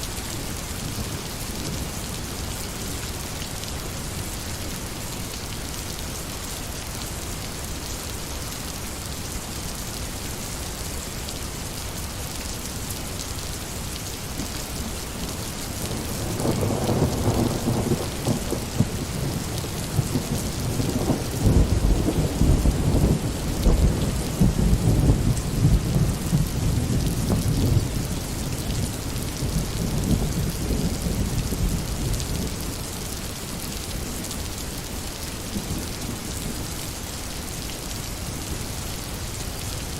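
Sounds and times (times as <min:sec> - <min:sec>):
thunder rumbling: 0:16.0 - 0:28.6.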